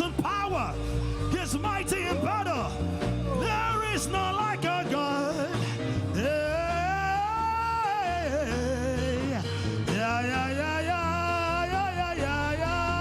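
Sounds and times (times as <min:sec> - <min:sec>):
instrumental backing with bass: 0:00.0 - 0:13.0
person singing gospel: 0:00.0 - 0:13.0.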